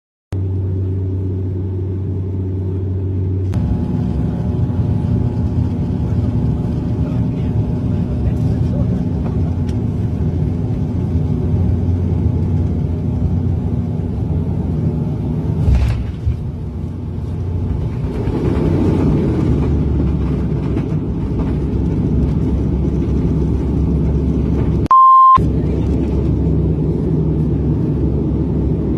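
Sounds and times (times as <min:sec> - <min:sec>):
steady low rumble: 0:00.3 - 0:28.9
electronic beep: 0:24.9 - 0:25.4.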